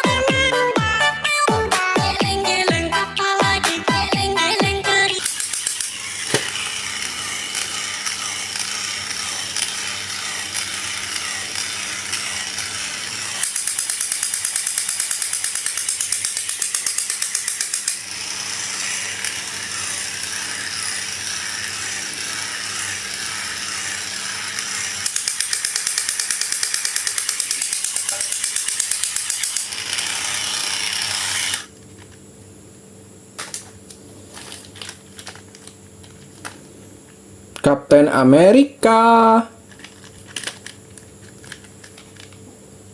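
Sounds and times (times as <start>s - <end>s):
rapid mechanical clicking: 5.2s - 31.7s.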